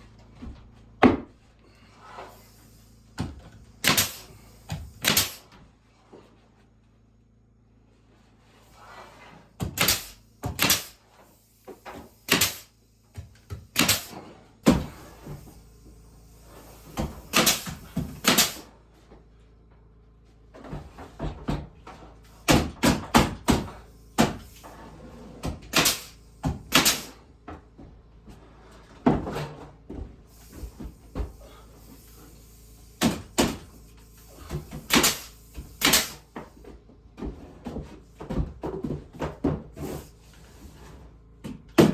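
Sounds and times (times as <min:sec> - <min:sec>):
wooden knocks and bangs: 0:00.4 - 0:01.4.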